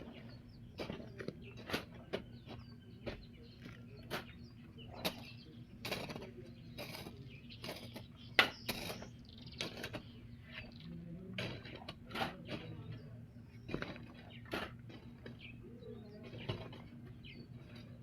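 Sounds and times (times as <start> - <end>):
hand tools knocking soil: 0.0 - 4.4, 5.0 - 10.2, 11.3 - 15.4.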